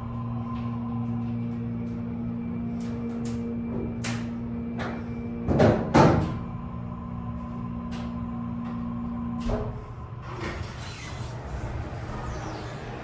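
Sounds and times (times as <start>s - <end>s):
elevator steady hum: 0.0s - 13.0s.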